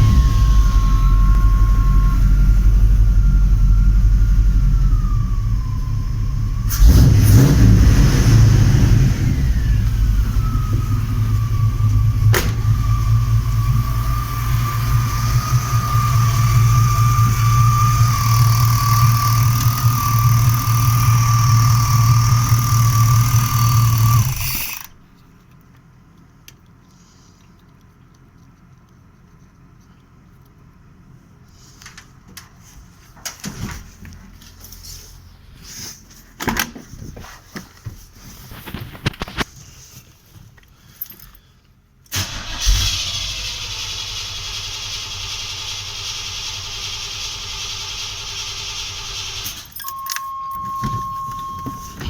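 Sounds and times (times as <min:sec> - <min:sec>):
engine starter cranking: 0:00.0 - 0:02.7, 0:06.6 - 0:25.1, 0:42.1 - 0:50.8.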